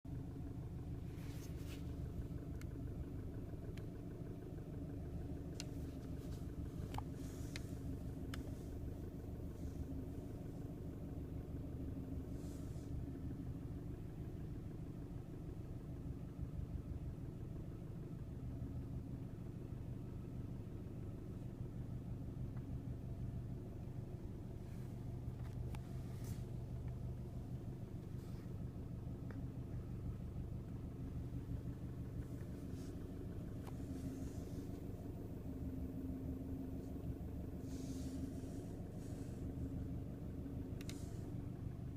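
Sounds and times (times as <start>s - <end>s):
car engine idling: 0.1s - 41.9s
engine knocking and clicking: 0.1s - 41.9s.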